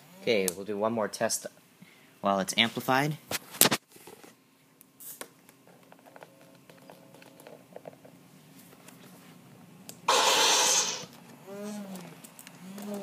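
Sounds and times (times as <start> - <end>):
loud hissing burst from toy speaker: 10.1 - 11.1.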